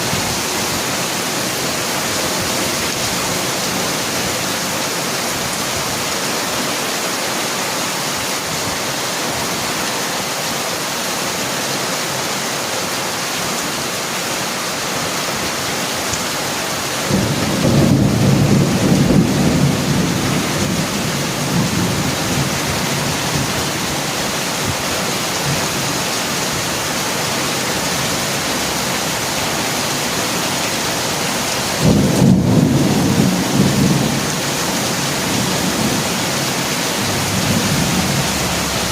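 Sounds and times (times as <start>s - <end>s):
heavy rain pouring: 0.0s - 38.9s
thunder rumbling: 17.1s - 24.0s, 31.8s - 36.4s, 37.0s - 38.9s.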